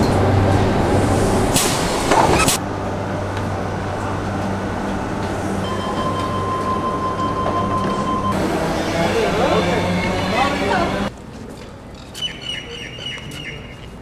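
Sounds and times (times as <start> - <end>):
steady high tone: 5.6 - 11.1.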